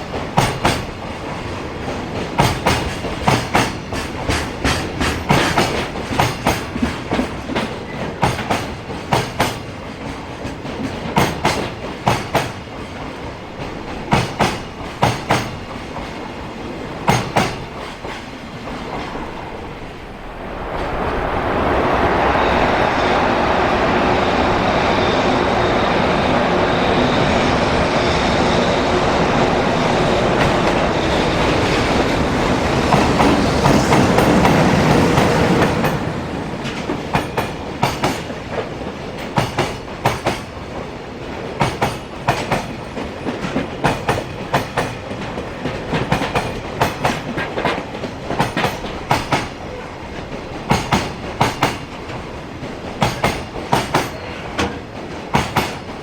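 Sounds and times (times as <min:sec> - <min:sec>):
electric locomotive passing: 0:00.0 - 0:56.0
wheels clicking over rail joints: 0:00.1 - 0:16.2, 0:41.5 - 0:56.0.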